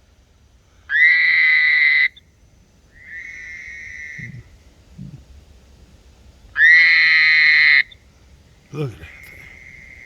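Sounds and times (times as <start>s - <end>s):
frogs whistle-like calls: 0.9s - 2.3s, 2.9s - 5.2s, 6.6s - 8.0s, 9.0s - 10.0s.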